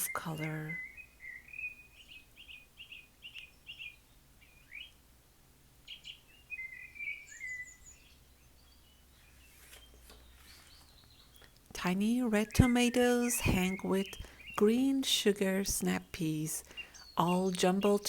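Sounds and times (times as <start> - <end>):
bird trill: 0.0 - 5.0, 5.8 - 15.2
faint birdsong chirps: 0.0 - 18.0.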